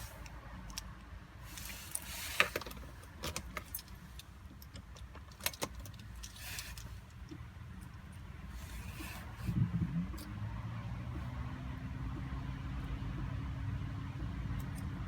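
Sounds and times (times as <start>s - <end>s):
steady low rumble: 7.5s - 15.0s.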